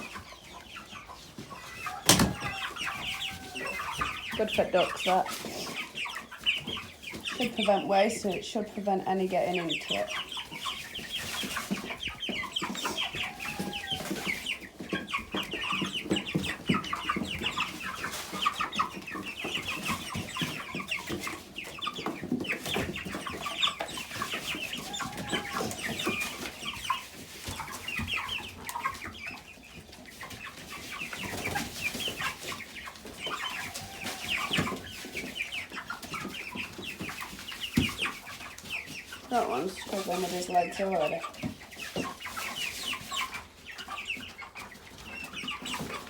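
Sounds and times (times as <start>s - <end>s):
chickens clucking and cheeping: 0.0s - 46.0s
chicken squawks: 23.3s - 26.6s.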